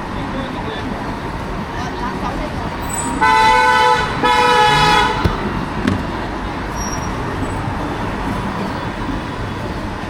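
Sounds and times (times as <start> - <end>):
street traffic: 0.0 - 10.0
vehicle horn honking: 3.2 - 5.5.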